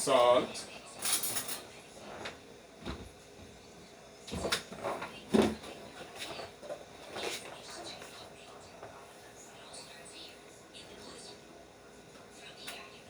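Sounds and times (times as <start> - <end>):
kitchen knocks and clunks: 2.8 - 3.6, 4.3 - 6.8.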